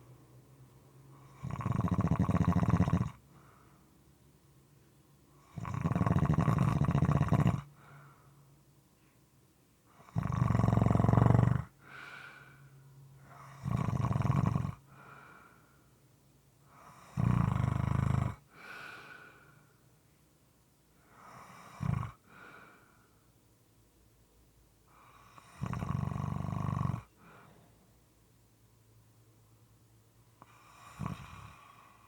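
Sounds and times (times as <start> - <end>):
person snoring: 1.2 - 3.2, 5.4 - 7.7, 10.0 - 12.4, 13.3 - 15.2, 16.8 - 19.2, 21.2 - 22.2, 25.0 - 27.1, 30.4 - 32.0
soft breathing: 3.2 - 4.1, 7.7 - 9.4, 11.7 - 13.4, 14.8 - 16.1, 18.5 - 20.1, 21.0 - 23.4, 27.1 - 28.0.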